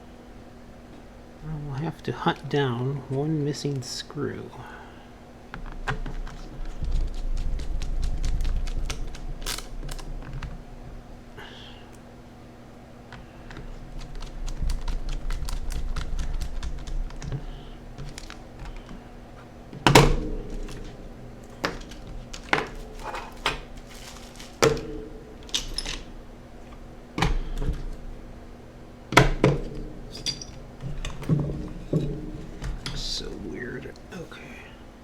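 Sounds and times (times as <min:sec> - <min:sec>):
hard objects clacking down: 0:13.1 - 0:33.4.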